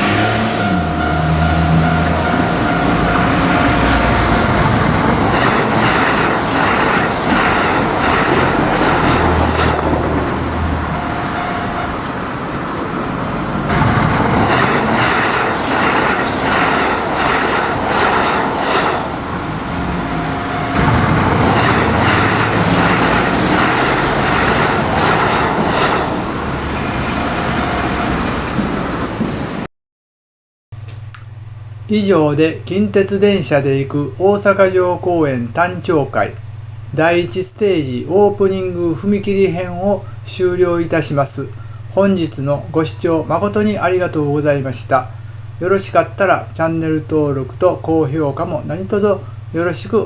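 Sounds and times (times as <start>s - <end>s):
train wheels clattering over rail joints: 0.0s - 29.6s.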